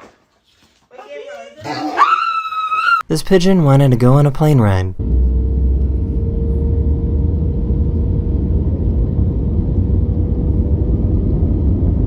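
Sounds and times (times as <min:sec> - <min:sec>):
airplane rumbling: 0:05.0 - 0:12.0.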